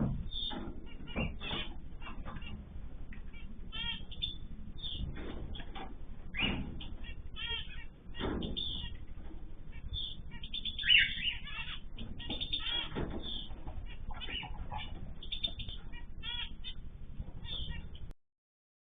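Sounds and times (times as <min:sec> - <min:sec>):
cage birds chirping: 0:00.0 - 0:18.2.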